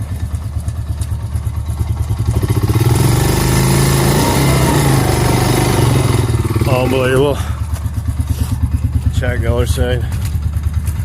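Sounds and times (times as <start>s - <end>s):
atv engine idling and revving: 0.0s - 11.0s.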